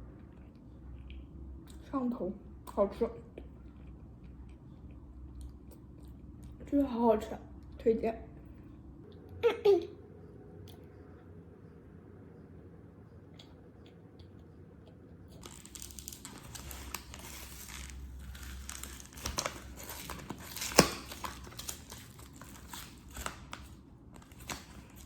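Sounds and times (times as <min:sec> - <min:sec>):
plastic packaging crinkling and tearing: 0:15.4 - 0:25.0.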